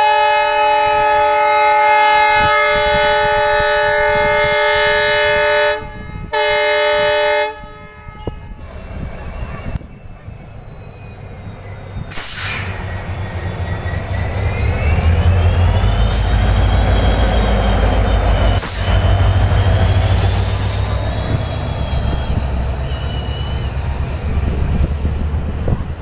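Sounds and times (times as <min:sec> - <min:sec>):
train rumble on rails: 0:00.0 - 0:26.0
high wheel squeal: 0:08.2 - 0:26.0
short loud hisses: 0:12.1 - 0:13.0.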